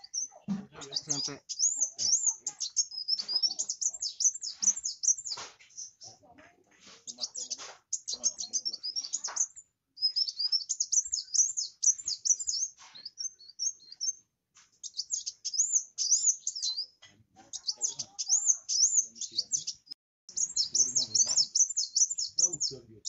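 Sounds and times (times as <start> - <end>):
bird twittering song: 0.0 - 23.0.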